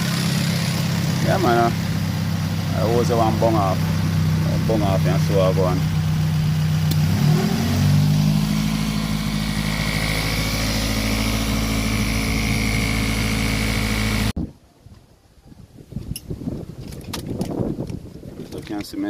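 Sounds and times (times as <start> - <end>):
car engine revving and idling: 0.0 - 14.4.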